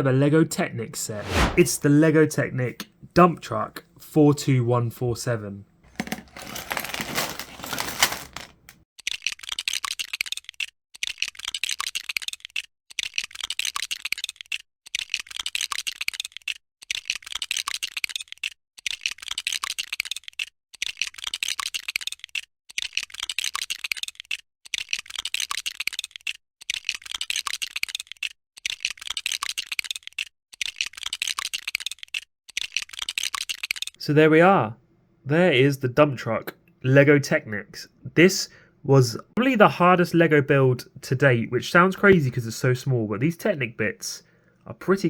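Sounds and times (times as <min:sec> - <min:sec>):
plastic pieces clicking and rattling: 0:05.9 - 0:16.6, 0:19.1 - 0:34.0.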